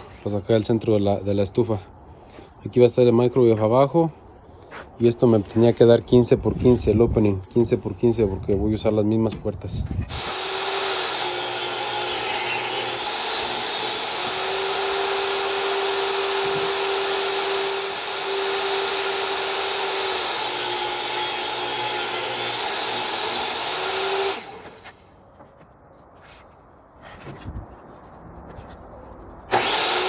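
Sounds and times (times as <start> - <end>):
power tool cutting wood: 10.1 - 25.0, 29.5 - 30.0.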